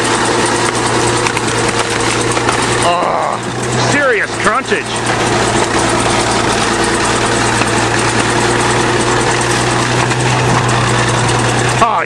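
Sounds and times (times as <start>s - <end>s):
bulldozer diesel engine running: 0.0s - 12.0s.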